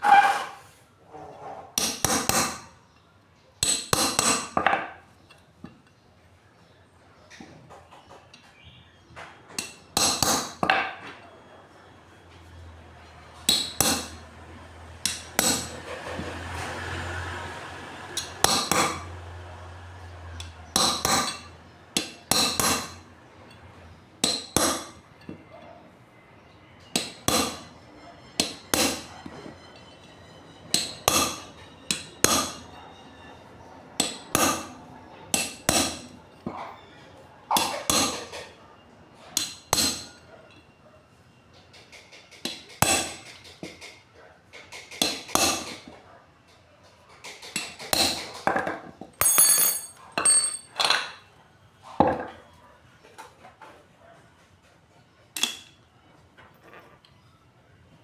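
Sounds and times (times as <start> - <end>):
hammer striking metal: 1.8 - 2.7, 3.6 - 4.8, 9.6 - 10.8, 13.4 - 16.0, 18.2 - 19.2, 20.4 - 23.1, 24.2 - 25.4, 26.8 - 36.2, 39.4 - 40.2, 49.2 - 51.0.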